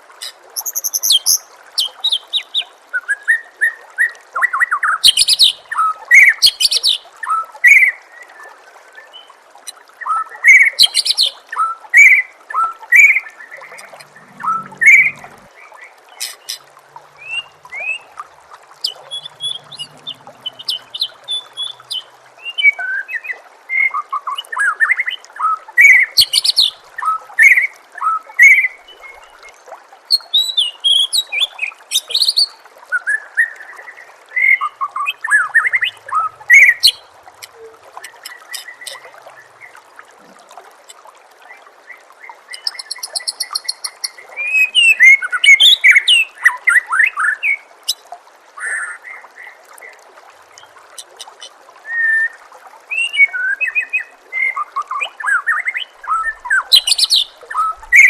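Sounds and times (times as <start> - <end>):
running water trickling: 0.0 - 58.0
bird singing whistles and trills: 0.6 - 3.8, 18.8 - 27.6, 42.5 - 47.6, 52.9 - 58.0.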